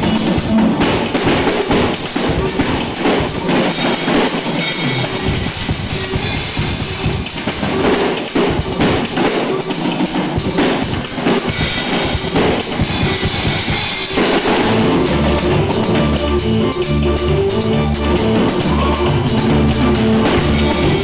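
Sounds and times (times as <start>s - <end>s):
drum kit played fast: 0.0s - 21.0s
low bass notes: 14.6s - 21.0s.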